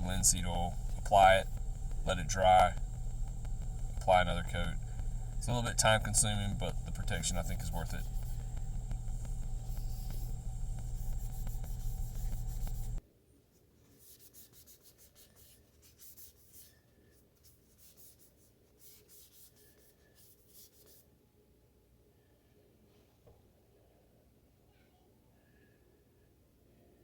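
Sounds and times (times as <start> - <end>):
rag rubbing over knife: 0.0 - 13.0
steady low hum: 0.0 - 13.0.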